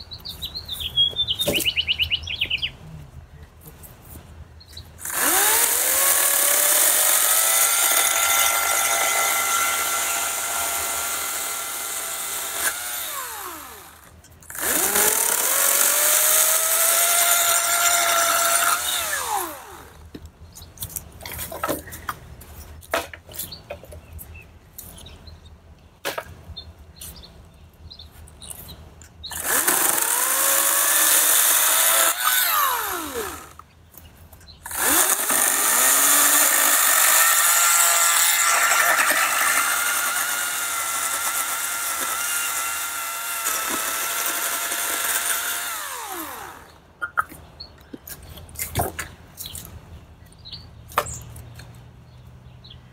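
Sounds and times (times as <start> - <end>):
electric chainsaw cutting wood: 5.0 - 20.2, 29.3 - 33.6, 34.6 - 46.8.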